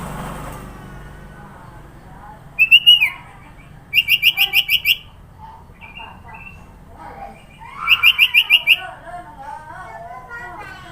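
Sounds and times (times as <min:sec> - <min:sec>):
bird singing: 0:01.6 - 0:09.0.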